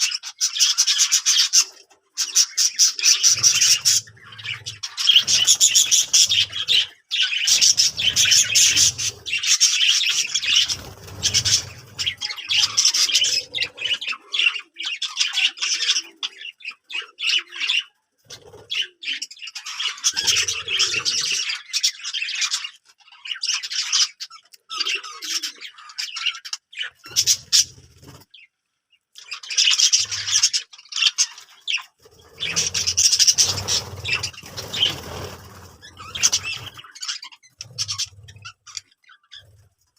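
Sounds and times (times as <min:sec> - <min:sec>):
budgerigars chattering: 0:00.0 - 0:28.5, 0:29.2 - 0:39.7.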